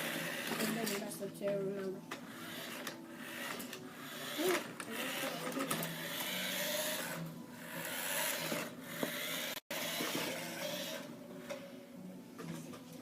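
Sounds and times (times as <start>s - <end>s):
toy car electric motor whirring: 0.0s - 1.0s, 2.2s - 11.1s.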